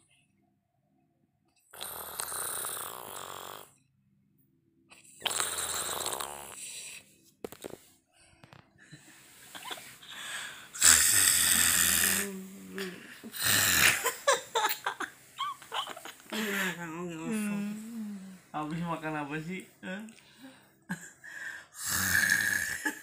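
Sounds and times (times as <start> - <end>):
person snoring loudly: 1.7 - 3.7, 5.2 - 6.8, 10.4 - 14.3, 21.8 - 23.0
person breathing quietly: 8.0 - 11.3, 16.2 - 16.8, 20.2 - 21.8.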